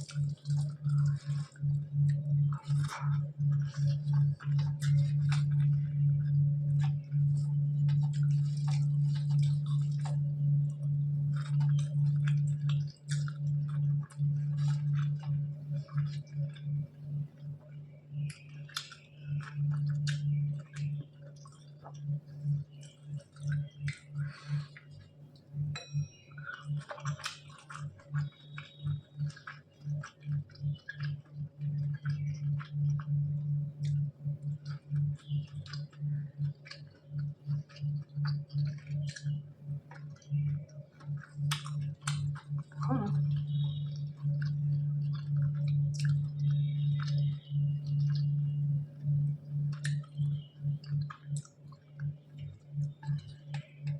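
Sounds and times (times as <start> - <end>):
steady low hum: 0.0 - 53.9
person chewing: 40.9 - 47.3.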